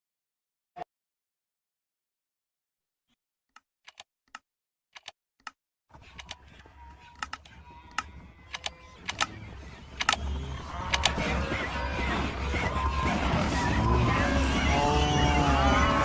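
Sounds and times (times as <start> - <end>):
sharp irregular clicks: 3.5 - 4.4, 5.0 - 10.2, 10.9 - 11.2.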